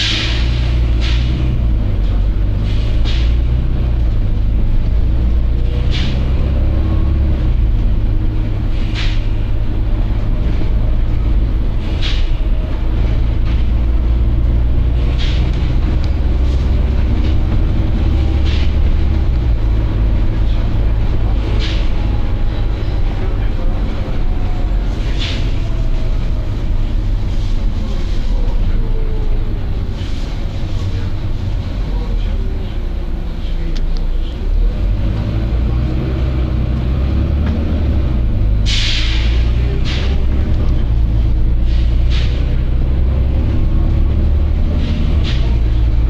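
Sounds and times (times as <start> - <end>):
air brake hiss: 0.0 - 1.5, 38.6 - 40.2
bus engine rumbling: 0.0 - 46.0.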